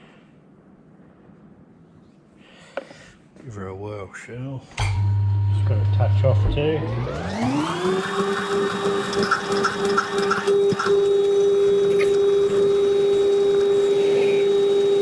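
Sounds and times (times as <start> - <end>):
electric motor whine: 4.9 - 15.0.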